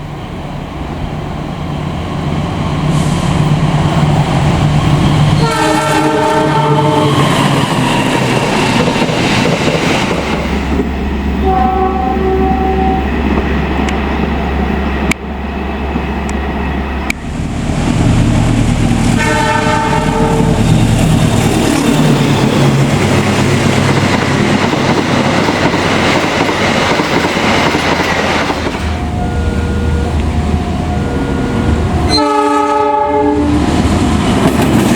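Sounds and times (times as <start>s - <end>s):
diesel locomotives running: 0.0s - 34.9s
train wheels on rails: 0.0s - 34.9s
locomotive horns: 5.4s - 7.5s, 11.4s - 13.3s, 19.1s - 20.8s, 29.0s - 33.6s.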